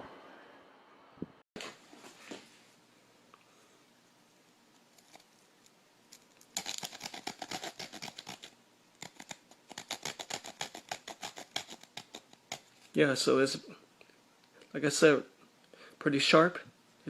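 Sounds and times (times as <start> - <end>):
small saw cutting wood: 6.6 - 12.7.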